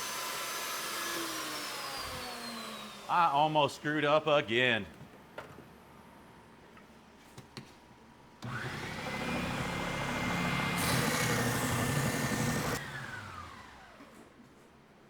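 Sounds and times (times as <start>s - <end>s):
power tool motor whining: 0.0s - 3.1s, 8.4s - 14.2s.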